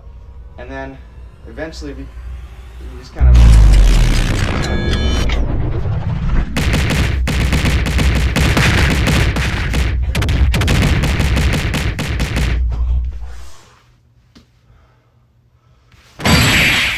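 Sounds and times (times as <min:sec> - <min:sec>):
deep rumble: 0:00.0 - 0:13.6
rapid sharp bangs: 0:06.4 - 0:13.5.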